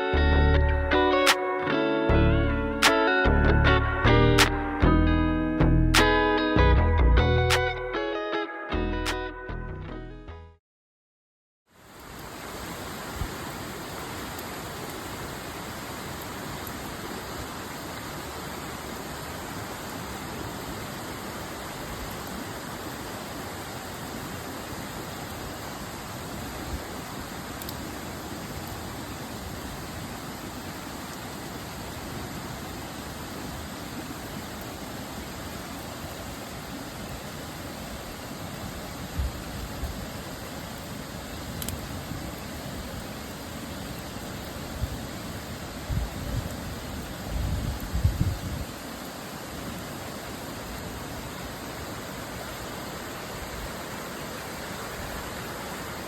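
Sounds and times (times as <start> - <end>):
stream running water: 11.7 - 56.0.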